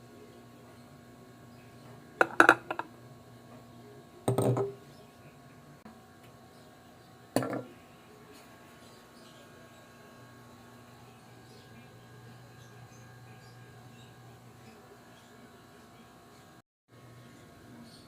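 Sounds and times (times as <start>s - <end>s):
faint steady hum: 0.0s - 18.0s
objects clicking and knocking: 2.2s - 2.9s.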